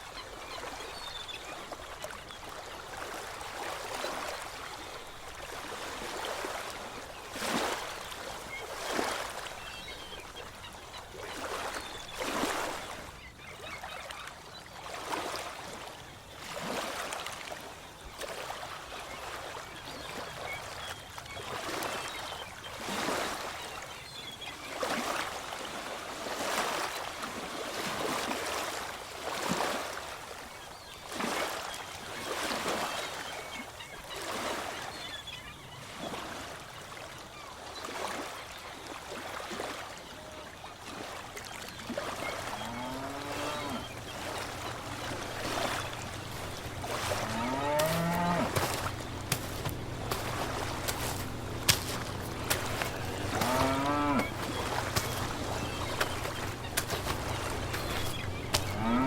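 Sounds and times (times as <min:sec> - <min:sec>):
ocean waves washing in: 0:42.1 - 0:59.0.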